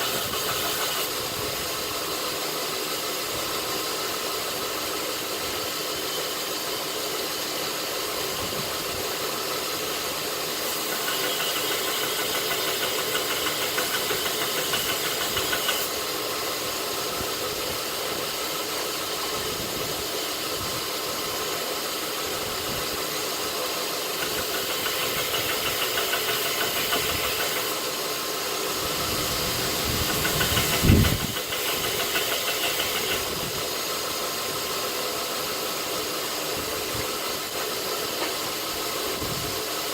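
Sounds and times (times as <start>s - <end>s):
steel grinding on belt: 0.0s - 1.3s, 9.5s - 16.0s, 24.1s - 28.0s, 28.7s - 33.6s
belt grinder motor hum: 10.6s - 15.9s, 24.2s - 27.9s.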